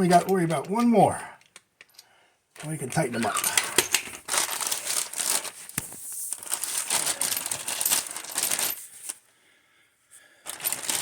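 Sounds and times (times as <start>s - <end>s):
metal lug nuts clinking and rattling: 0.0s - 4.2s.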